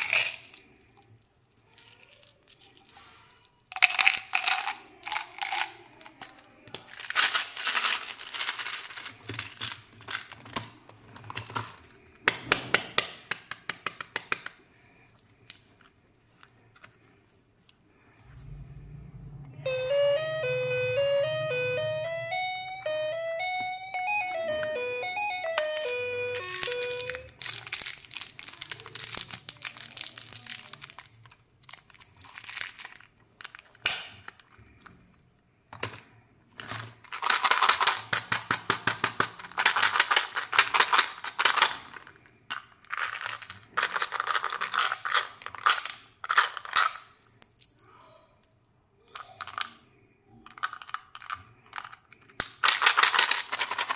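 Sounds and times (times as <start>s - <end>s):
candy wrapper crinkling: 0.0s - 12.4s, 25.8s - 34.8s, 36.6s - 48.6s, 49.2s - 53.9s
melodic jingle: 19.2s - 27.2s.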